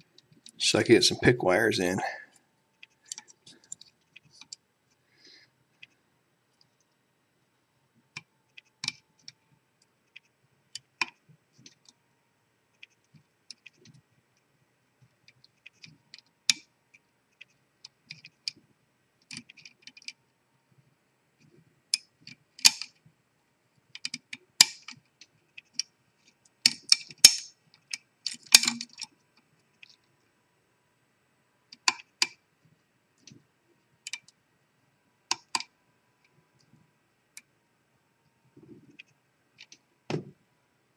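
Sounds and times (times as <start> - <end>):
lock picks clicking in a lock: 22.0 - 23.0, 26.7 - 29.1.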